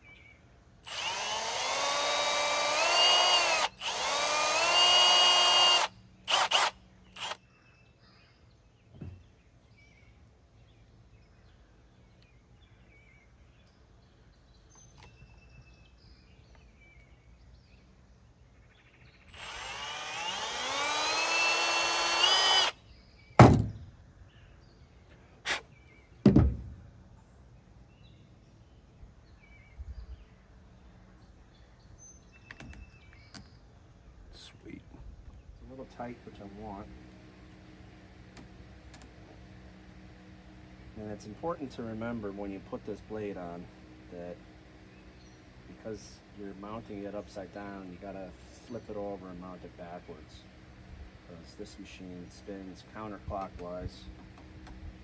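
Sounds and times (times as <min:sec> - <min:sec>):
power drill running: 0:00.8 - 0:07.4, 0:19.3 - 0:22.8
sharp knocks: 0:23.4 - 0:23.9, 0:26.2 - 0:26.7.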